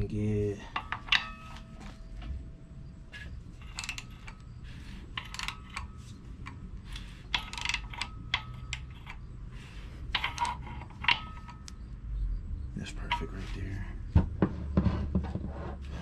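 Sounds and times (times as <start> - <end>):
ratchet wrench clicking: 3.6 - 9.3, 10.1 - 11.8.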